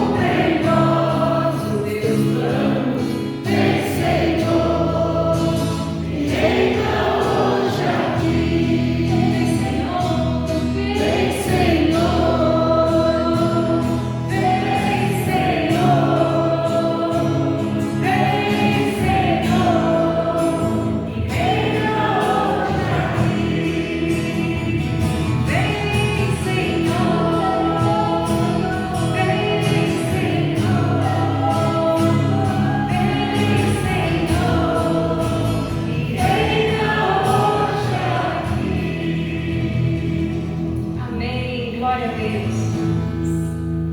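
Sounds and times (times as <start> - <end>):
choir singing gospel song: 0.0 - 41.3.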